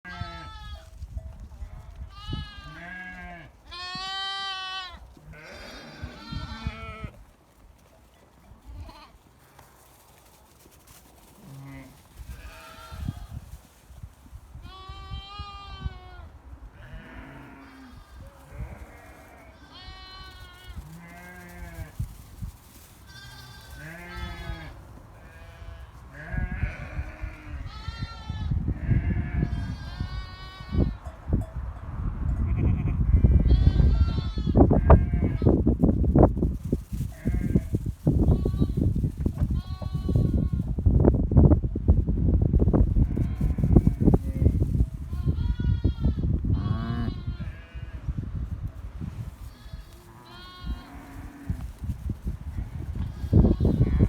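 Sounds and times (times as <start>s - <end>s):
small livestock bleating: 0.1s - 0.9s, 1.8s - 7.2s, 8.6s - 9.7s, 11.4s - 13.5s, 14.6s - 22.0s, 23.0s - 31.0s, 32.5s - 35.6s, 37.1s - 38.9s, 39.5s - 40.7s, 43.0s - 48.1s, 49.4s - 51.8s, 52.5s - 54.0s.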